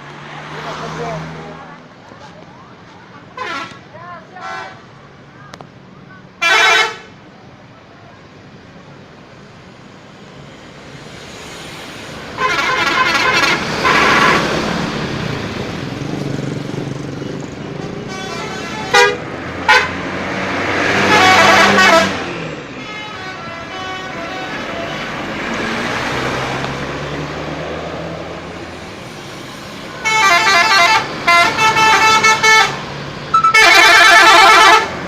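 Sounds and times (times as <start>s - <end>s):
bus engine running: 0.0s - 35.0s
musical air horn blasts: 12.4s - 14.5s, 18.1s - 20.0s, 20.9s - 22.2s, 22.8s - 25.1s, 30.0s - 35.0s.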